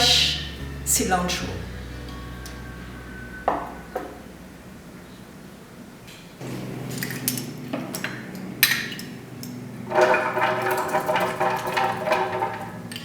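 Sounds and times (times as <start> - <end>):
dishes and utensils clinking: 6.9 - 13.0.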